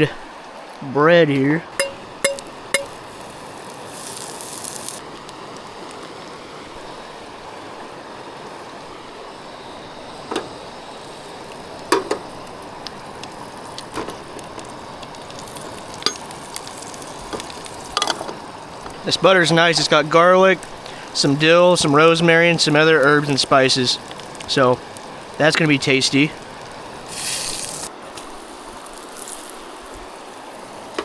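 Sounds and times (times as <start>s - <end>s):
utensils clinking on cookware: 1.8s - 3.2s, 16.0s - 16.4s, 18.0s - 18.4s
dough sizzling in a pan: 1.8s - 31.0s.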